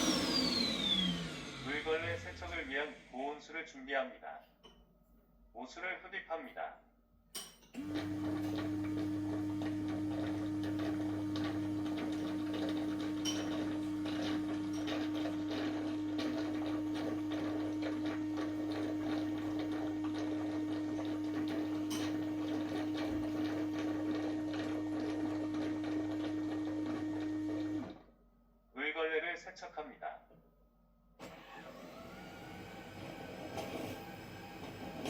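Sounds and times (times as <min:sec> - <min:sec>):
motor humming: 0:00.0 - 0:03.1, 0:07.8 - 0:28.0, 0:31.3 - 0:35.0.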